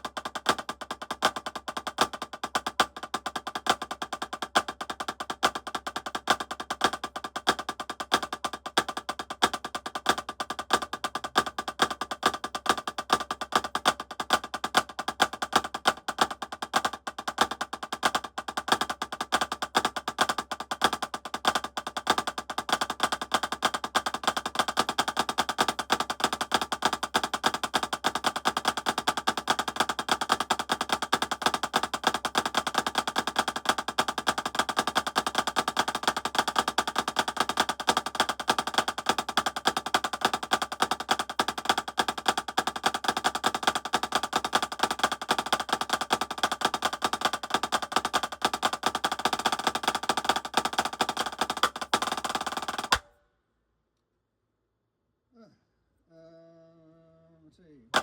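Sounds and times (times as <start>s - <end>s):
drumsticks playing fast strokes: 23.8s - 53.1s.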